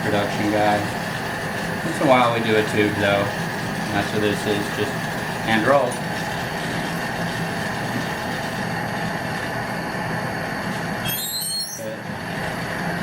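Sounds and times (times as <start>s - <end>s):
torch rushing roar: 0.0s - 13.0s
high wavering squeaks: 11.0s - 12.0s.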